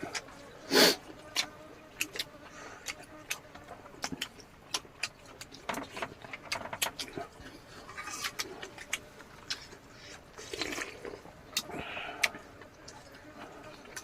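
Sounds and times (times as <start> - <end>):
eating clicks and smacks: 1.2 - 7.4.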